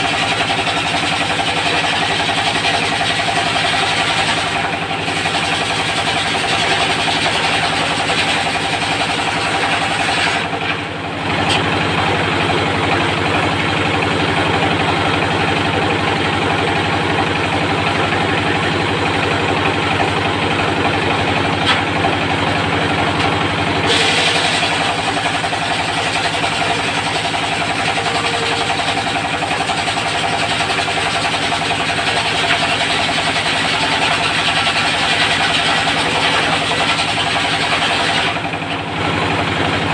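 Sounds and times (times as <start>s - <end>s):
diesel engine running steadily: 0.0s - 39.9s.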